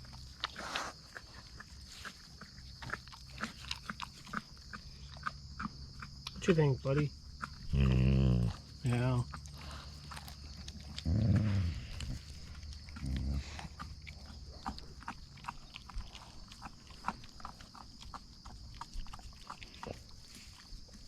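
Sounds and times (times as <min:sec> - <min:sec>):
bones crunching as dogs chew: 0:00.0 - 0:21.0
dogs growling: 0:07.4 - 0:20.6.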